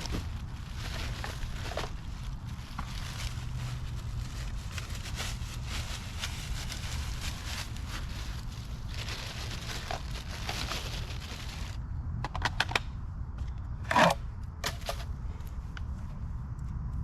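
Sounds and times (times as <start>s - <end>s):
scrape: 13.9s - 15.1s.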